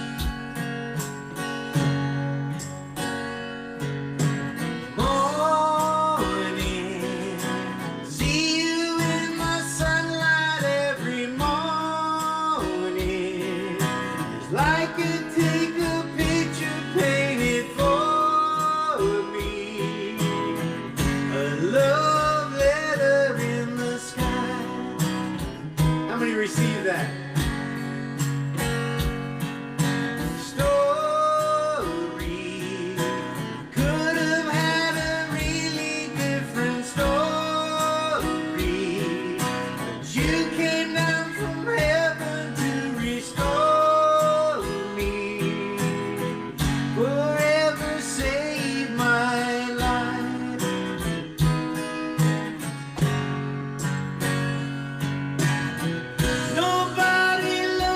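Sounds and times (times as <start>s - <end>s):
acoustic guitar strumming: 0.0s - 57.9s
man singing: 4.7s - 27.8s, 30.1s - 52.3s, 56.2s - 57.9s.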